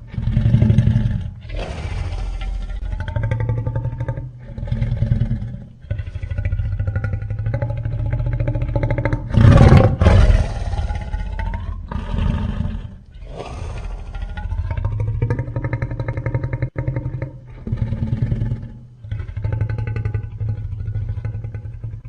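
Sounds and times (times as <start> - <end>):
monster roars: 0.4 - 3.2, 9.3 - 15.1.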